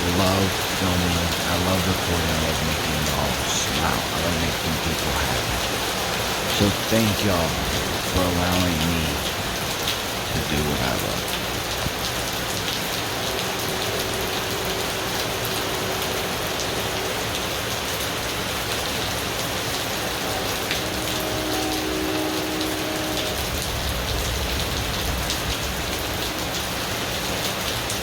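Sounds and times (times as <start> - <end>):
distant thunder rumble: 0.0 - 12.5, 20.4 - 28.0
rain falling: 0.0 - 28.0.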